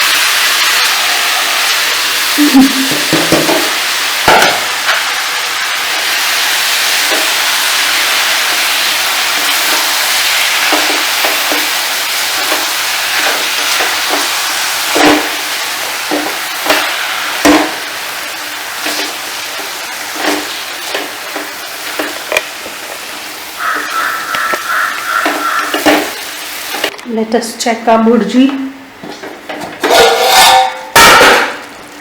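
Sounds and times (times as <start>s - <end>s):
food sizzling in a pan: 0.0s - 26.9s, 29.8s - 32.0s
spoon knocking against pan: 2.8s - 4.7s, 23.6s - 26.2s.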